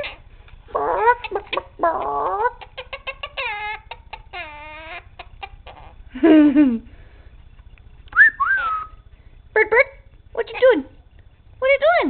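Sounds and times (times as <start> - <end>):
parrot squawking: 0.0 - 6.0, 8.4 - 9.0.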